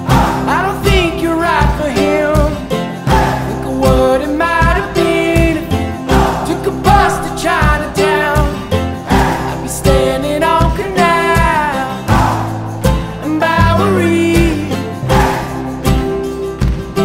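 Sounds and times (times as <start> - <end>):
person singing: 0.0 - 16.5
acoustic guitar: 0.0 - 17.0
steady beat: 0.0 - 17.0.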